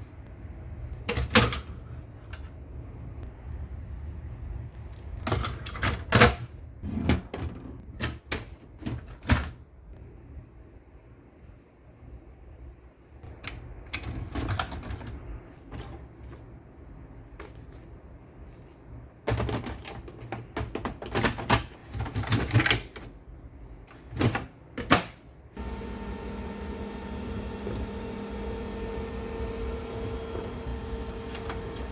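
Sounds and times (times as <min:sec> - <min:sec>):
printer packaging being handled: 0:25.6 - 0:31.9
steady hum with held tones: 0:25.6 - 0:31.9.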